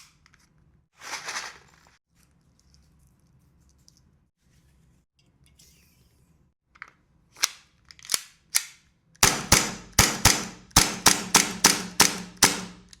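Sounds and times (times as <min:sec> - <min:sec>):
airsoft pistol shots: 0:09.2 - 0:12.9.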